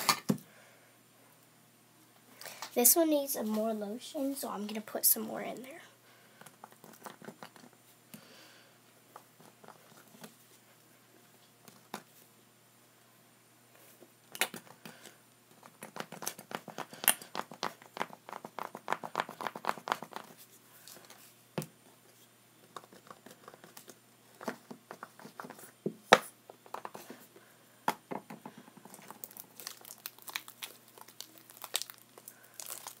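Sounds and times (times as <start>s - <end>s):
slime squishing by hand: 28.8s - 33.0s.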